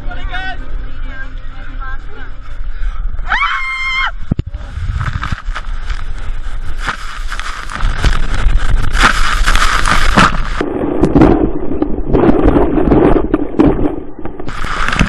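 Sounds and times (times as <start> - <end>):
rushing wind: 2.4 - 15.0
water hissing over microphone: 14.5 - 15.0.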